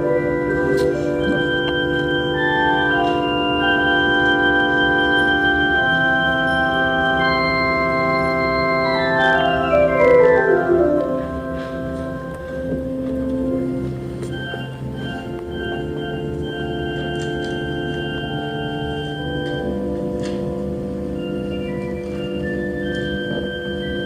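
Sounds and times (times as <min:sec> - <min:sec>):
organ playing slow chords: 0:00.0 - 0:24.0.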